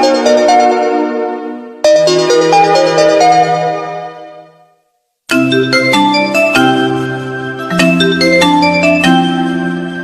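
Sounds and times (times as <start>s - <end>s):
marimba-like phone ringtone: 5.3s - 9.6s.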